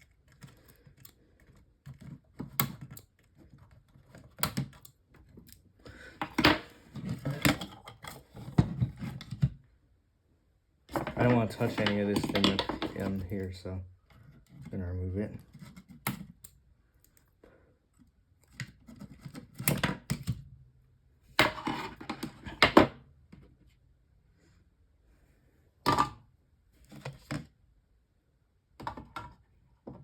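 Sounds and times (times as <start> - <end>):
fan heater parts clicking and rattling: 10.9 - 13.8.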